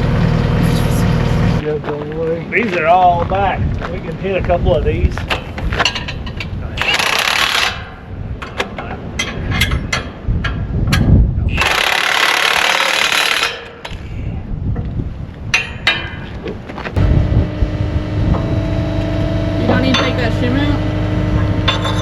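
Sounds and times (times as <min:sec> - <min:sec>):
pneumatic tool driving bolts: 0:06.8 - 0:07.9, 0:11.5 - 0:13.8
metal knocks and clanks: 0:15.6 - 0:16.7, 0:21.3 - 0:22.0.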